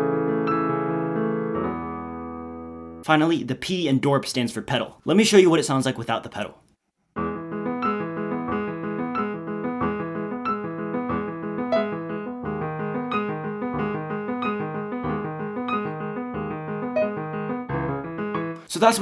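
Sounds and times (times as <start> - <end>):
detached piano notes and chords: 0.0 - 3.0, 7.2 - 19.0.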